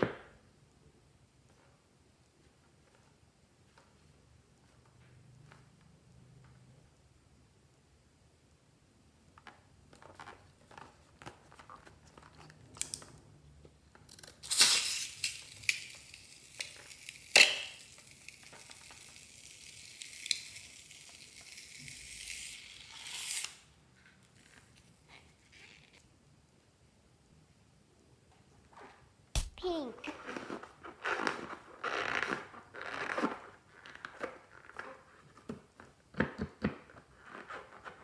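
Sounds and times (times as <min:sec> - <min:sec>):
crinkling tearing hiss: 0:14.2 - 0:23.7
sharp snaps: 0:29.4 - 0:29.8.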